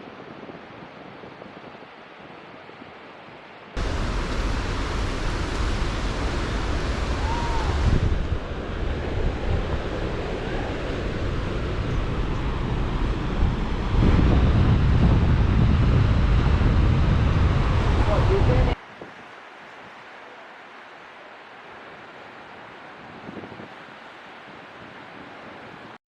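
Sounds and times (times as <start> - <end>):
steady rushing noise: 3.7 - 26.0
wind buffeting microphone: 3.8 - 19.3, 22.6 - 26.0.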